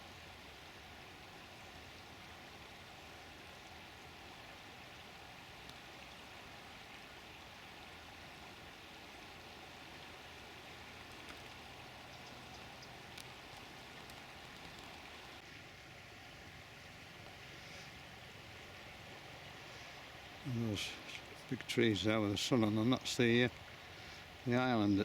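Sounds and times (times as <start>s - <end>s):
faint ticks: 5.6s - 5.8s, 11.0s - 15.3s.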